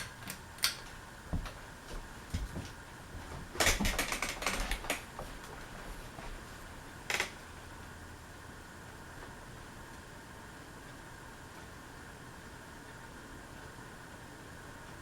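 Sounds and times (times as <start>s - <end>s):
ceiling fan clicks: 0.0s - 15.0s
faint steady hum: 0.0s - 15.0s.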